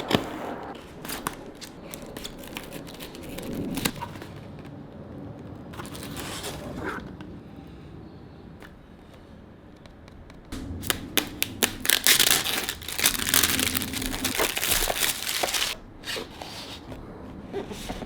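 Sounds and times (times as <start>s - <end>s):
packaging crinkling and rustling: 0.8s - 4.8s, 5.7s - 6.8s, 10.8s - 16.9s.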